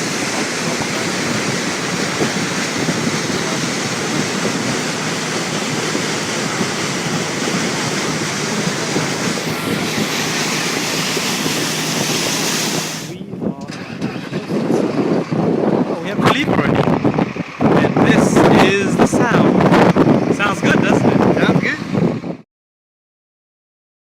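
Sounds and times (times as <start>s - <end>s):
moving water: 0.0s - 15.2s
wind: 0.0s - 22.4s.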